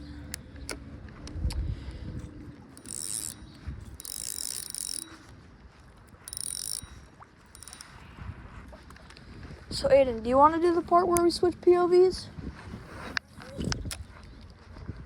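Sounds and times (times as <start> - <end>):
fishing reel whirring: 2.7 - 5.3, 6.1 - 8.0.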